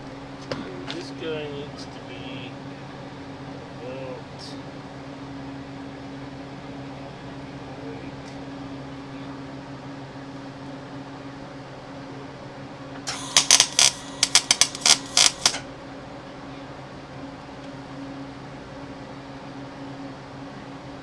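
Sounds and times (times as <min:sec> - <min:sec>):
low electrical hum: 0:00.0 - 0:21.0
welder crackling bursts: 0:13.1 - 0:15.6.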